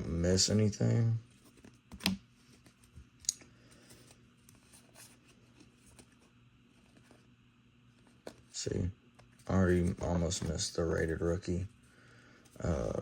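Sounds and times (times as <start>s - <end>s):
trading cards clicking and rustling: 9.2s - 11.4s.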